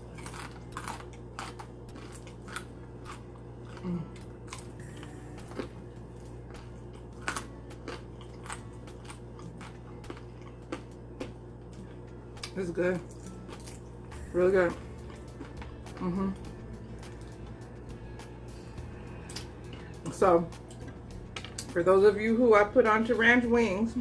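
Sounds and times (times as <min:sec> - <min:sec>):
crunchy chicken chewing: 0:00.0 - 0:14.0
faint steady hum: 0:00.0 - 0:24.0.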